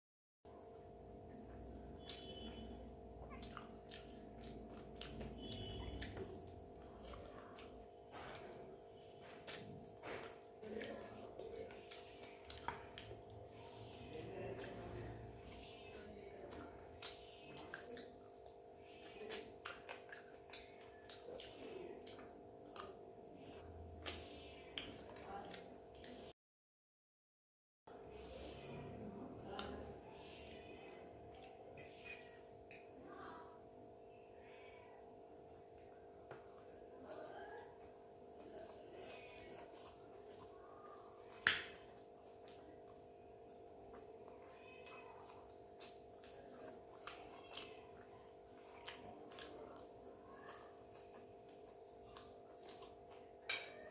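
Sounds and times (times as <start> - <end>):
chewing: 0.5 - 26.3, 28.4 - 33.0, 35.3 - 53.9
eating sounds: 0.5 - 26.3, 28.1 - 53.9
faint hum: 0.5 - 26.3.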